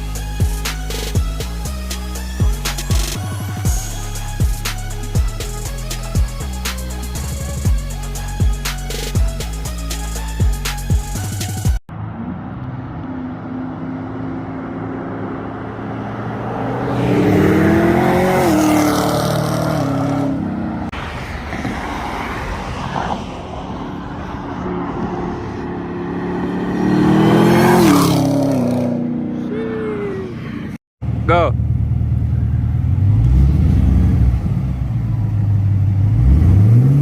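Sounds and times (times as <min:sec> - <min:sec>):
car engine revving: 0:11.9 - 0:37.0.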